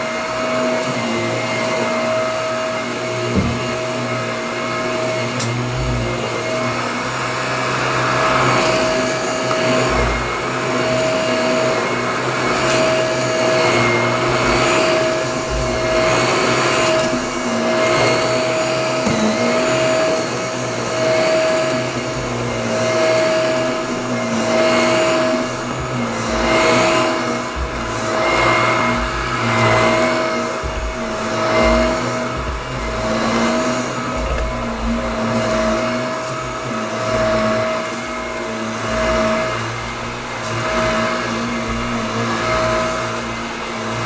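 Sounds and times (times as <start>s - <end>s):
vacuum cleaner running: 0.0s - 44.0s.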